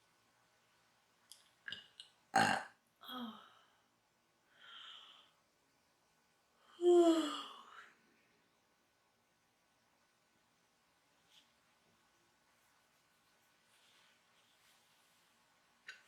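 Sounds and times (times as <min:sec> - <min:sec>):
woman burping: 0:02.4 - 0:03.4.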